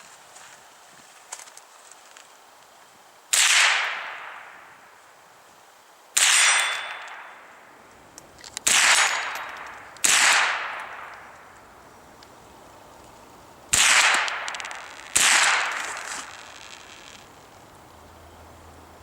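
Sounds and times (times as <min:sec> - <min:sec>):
rifle shots with echo: 0:03.3 - 0:04.7, 0:06.2 - 0:07.5, 0:08.6 - 0:11.4, 0:13.7 - 0:16.8.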